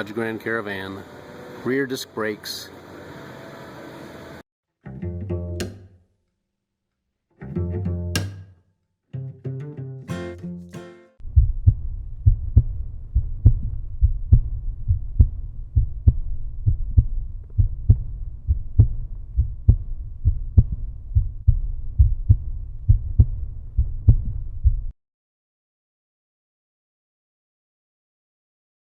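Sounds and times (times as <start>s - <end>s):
deep thumping heartbeat-like beat: 11.2s - 25.0s.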